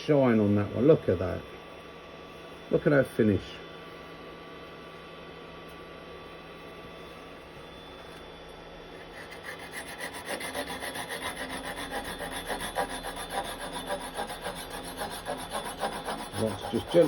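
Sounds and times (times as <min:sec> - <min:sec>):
hand saw cutting wood: 0:09.1 - 0:17.0.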